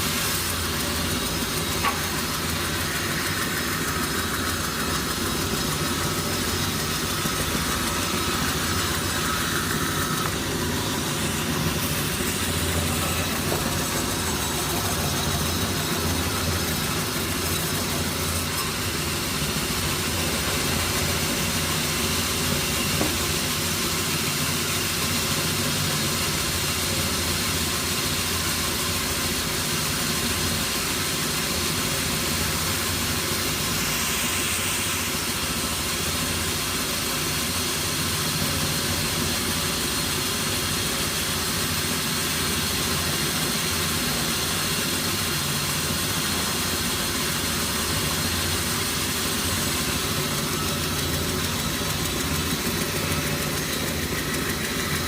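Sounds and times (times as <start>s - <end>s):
sawmill machinery drone: 0.0s - 55.0s.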